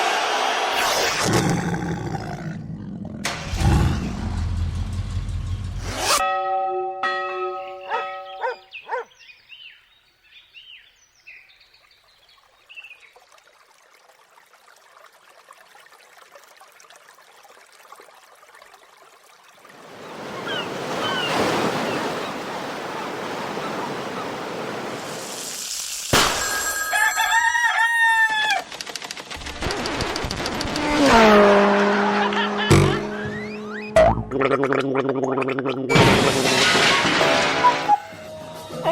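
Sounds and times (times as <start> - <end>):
rooster crowing: 26.8 - 28.7.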